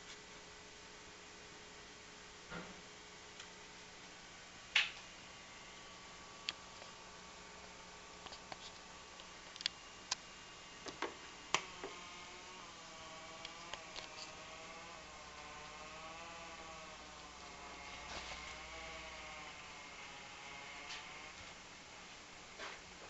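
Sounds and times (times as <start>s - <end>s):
electrical hum and hiss: 0.0s - 23.0s
wavering electrical whine: 0.0s - 23.0s.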